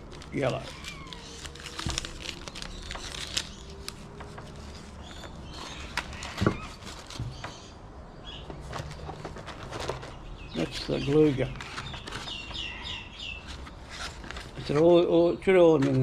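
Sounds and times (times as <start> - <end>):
tools and packaging handled: 0.0 - 7.7, 8.5 - 12.7.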